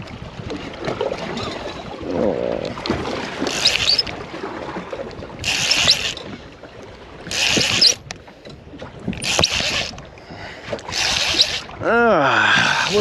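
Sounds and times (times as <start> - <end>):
low water and boat noise: 0.0 - 13.0
fishing reel winding: 3.4 - 4.1, 5.4 - 6.2, 7.3 - 8.0, 9.2 - 10.0, 10.8 - 11.7, 12.7 - 13.0.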